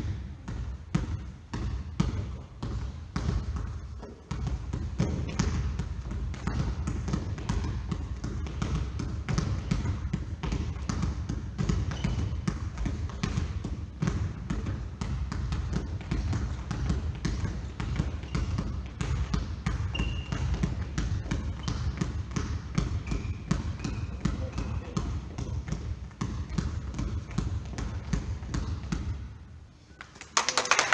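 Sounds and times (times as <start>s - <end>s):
basketball dribbling on hard floor: 0.0s - 29.3s
shoe squeaks: 11.8s - 12.5s, 18.1s - 18.7s, 19.8s - 20.6s, 21.4s - 22.0s, 22.8s - 25.0s.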